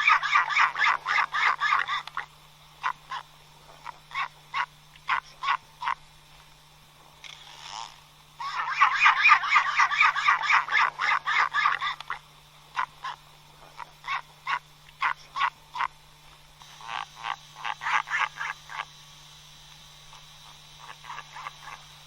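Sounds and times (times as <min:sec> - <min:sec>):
albatross croaking calls: 0:00.0 - 0:06.0, 0:08.4 - 0:15.9, 0:20.8 - 0:21.8.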